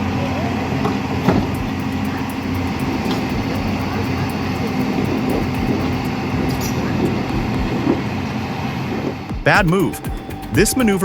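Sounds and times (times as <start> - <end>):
diesel engine droning: 0.0 - 11.0.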